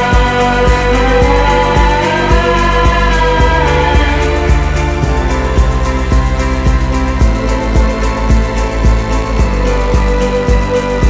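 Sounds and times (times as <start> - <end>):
background music with steady beat: 0.0 - 11.0.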